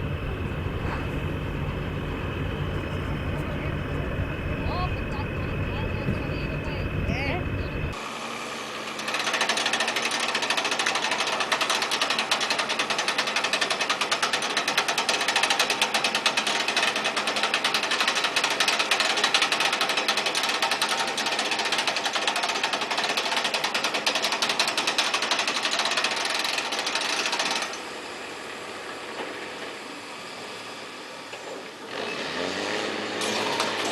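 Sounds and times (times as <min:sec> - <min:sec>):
machine rattling rapidly: 0:08.9 - 0:27.9, 0:31.9 - 0:33.9.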